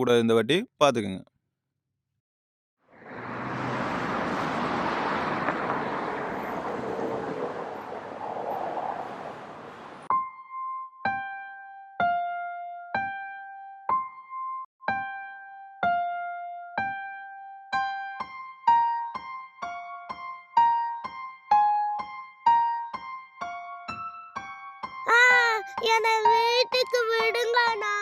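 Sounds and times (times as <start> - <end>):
piano-like keyboard melody: 10.1 - 28.0.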